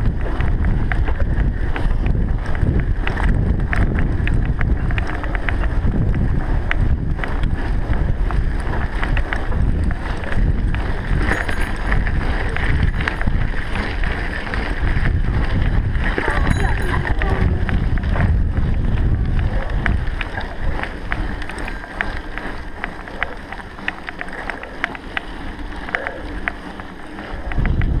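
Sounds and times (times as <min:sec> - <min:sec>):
wind buffeting microphone: 0:00.0 - 0:28.0
small knocks and rattles: 0:10.6 - 0:14.0.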